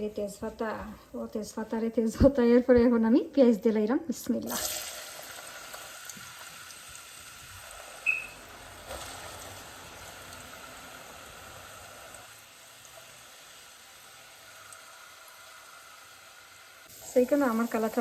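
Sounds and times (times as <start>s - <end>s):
onions sizzling in oil: 4.3s - 18.0s.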